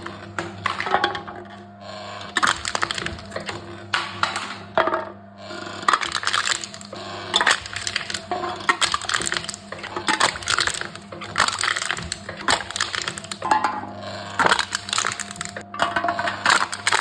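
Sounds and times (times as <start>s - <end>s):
cans being crushed: 2.3s - 4.4s, 5.9s - 13.6s, 14.3s - 15.7s, 16.5s - 17.0s.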